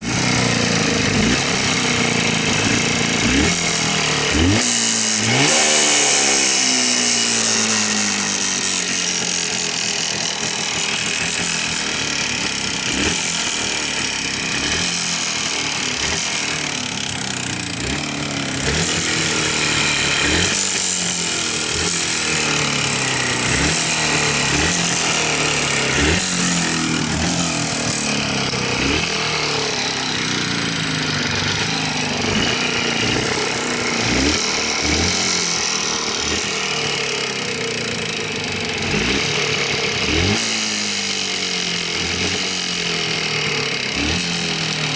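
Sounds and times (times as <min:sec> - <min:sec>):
engine knock: 0:00.0 - 0:44.9
motorcycle engine revving: 0:00.0 - 0:44.9.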